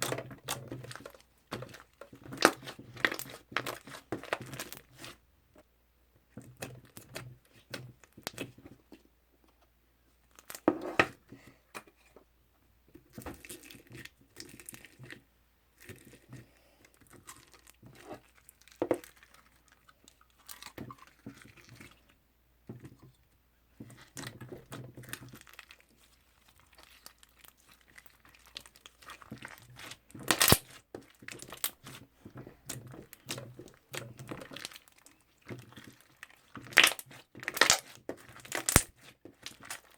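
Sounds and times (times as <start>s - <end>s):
slime crackling and tearing: 25.0s - 32.0s, 34.0s - 39.9s.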